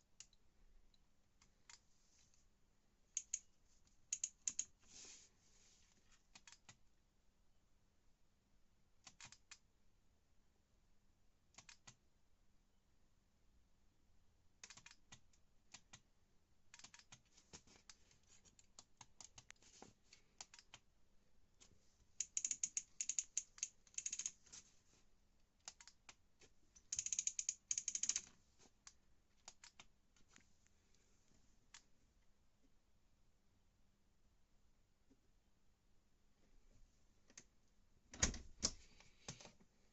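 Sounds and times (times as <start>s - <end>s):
rapid chattering clicks: 26.9s - 28.2s.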